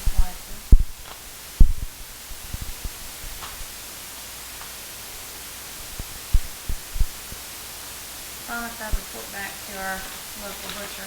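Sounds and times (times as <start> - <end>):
soft low thumps: 0.0 - 3.8, 6.0 - 7.3
steady background hiss: 0.0 - 11.0.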